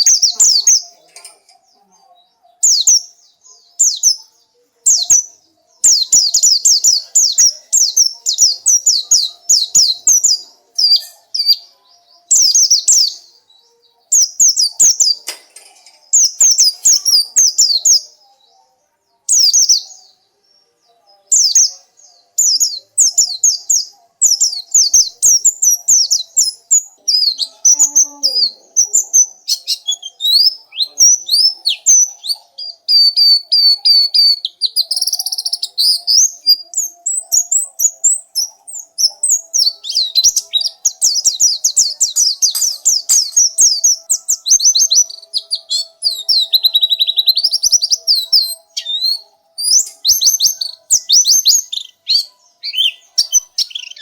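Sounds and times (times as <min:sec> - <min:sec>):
bird singing high sharp notes: 0:21.3 - 0:54.0.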